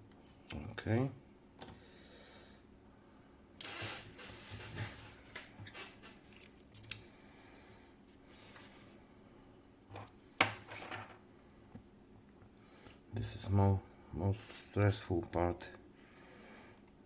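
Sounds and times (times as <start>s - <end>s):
metal lock parts clicking and clinking: 6.3s - 7.0s.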